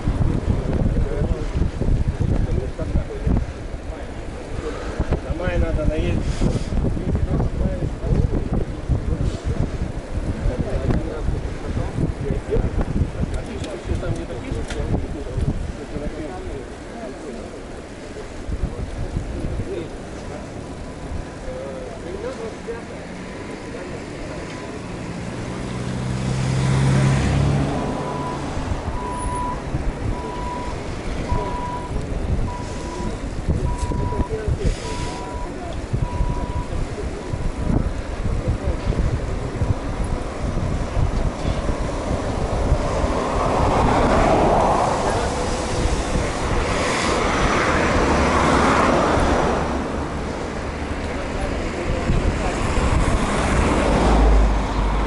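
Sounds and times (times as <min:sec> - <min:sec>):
road noise: 0:00.0 - 0:55.0
wind rushing over microphone: 0:00.0 - 0:55.0
vehicle passing close by: 0:23.0 - 0:31.3, 0:39.6 - 0:55.0
short high beeps: 0:28.1 - 0:29.6.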